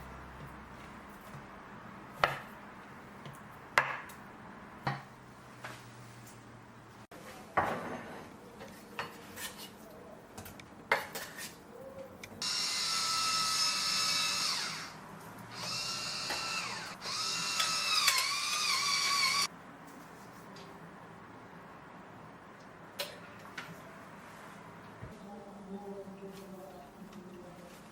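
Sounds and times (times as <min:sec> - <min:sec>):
blender motor whining: 0:12.4 - 0:19.5.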